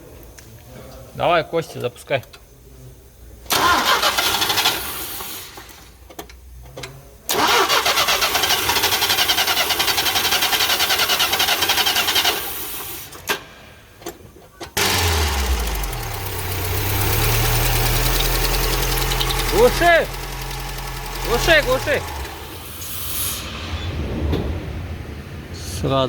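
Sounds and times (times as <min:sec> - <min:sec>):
starter cranking engine: 0:03.5 - 0:05.8, 0:07.3 - 0:13.4, 0:14.8 - 0:23.3
engine idling: 0:14.8 - 0:26.0.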